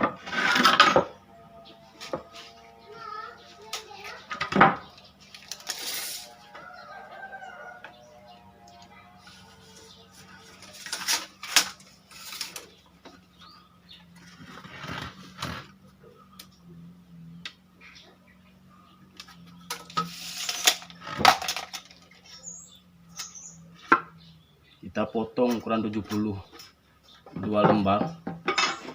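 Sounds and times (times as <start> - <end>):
wood knocking and scraping on wood: 25.4 - 28.9.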